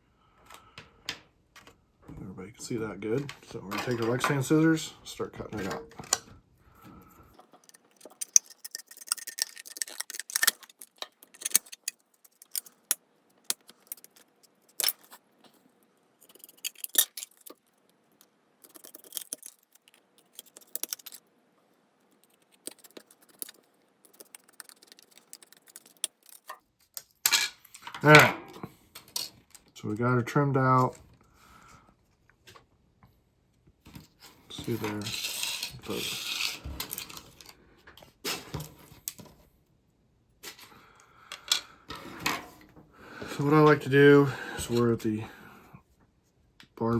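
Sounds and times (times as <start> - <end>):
plastic sheet crinkling: 7.6 - 12.9
scissors snipping plastic: 7.6 - 15.2, 16.2 - 17.6, 18.6 - 21.2, 22.2 - 26.6.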